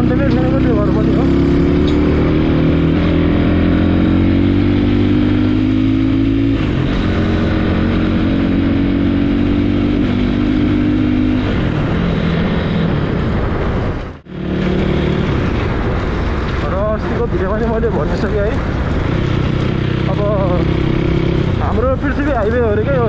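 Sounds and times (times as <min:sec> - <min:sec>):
motorcycle engine running: 0:18.3 - 0:23.0.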